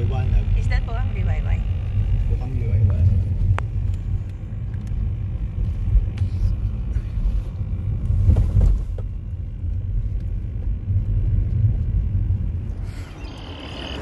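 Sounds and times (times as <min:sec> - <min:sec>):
car road rumble inside cabin: 0:00.0 - 0:14.0.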